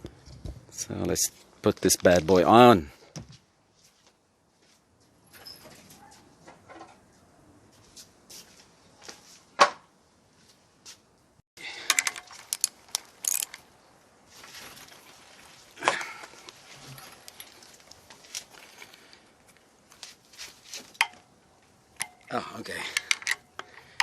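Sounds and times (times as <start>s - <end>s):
soft rustle: 3.3s - 6.4s, 12.3s - 21.0s
metal tools clicking and clinking: 11.8s - 13.6s, 22.0s - 24.0s.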